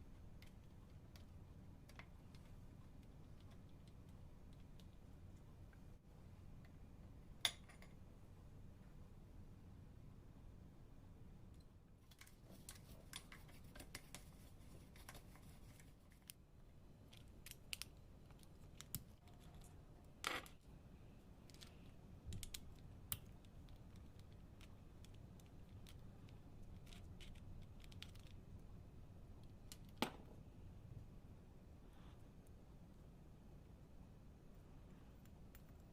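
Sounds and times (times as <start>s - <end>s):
low steady hum: 0.0s - 35.9s
small hard parts clicking and tapping: 21.4s - 28.6s.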